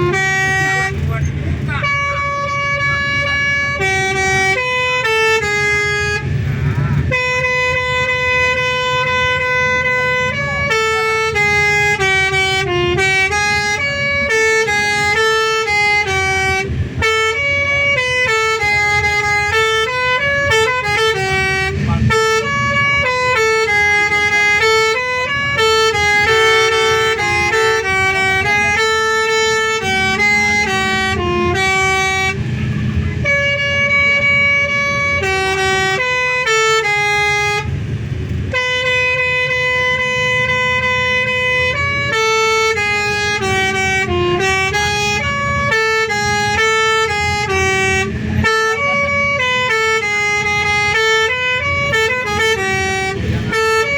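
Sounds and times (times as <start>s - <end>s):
multi-tone air horns playing a tune: 0.0s - 37.9s, 38.5s - 53.9s
bus engine rumble: 0.0s - 53.9s.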